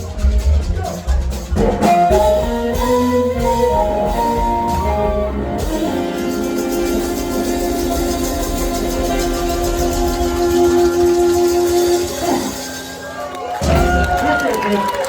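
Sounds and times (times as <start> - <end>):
live blues band playing: 0.0 - 15.0
melodic instrumental run: 1.5 - 13.3
drum hits: 13.6 - 14.4.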